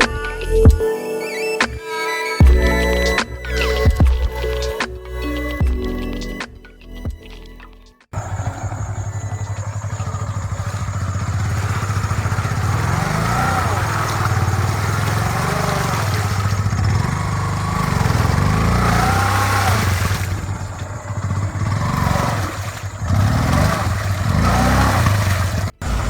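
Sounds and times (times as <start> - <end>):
motorcycle engine revving: 8.2 - 26.0.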